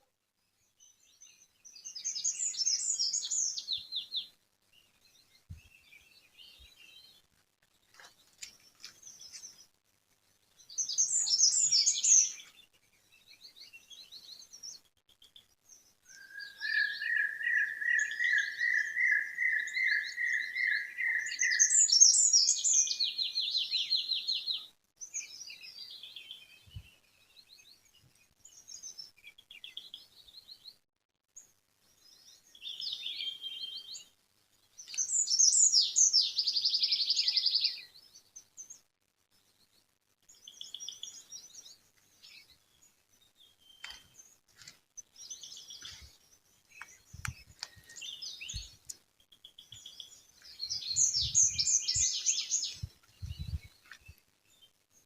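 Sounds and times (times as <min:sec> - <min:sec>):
songbirds singing: 0:00.0 - 0:30.8, 0:31.4 - 0:55.0
low bird trill: 0:16.1 - 0:24.2.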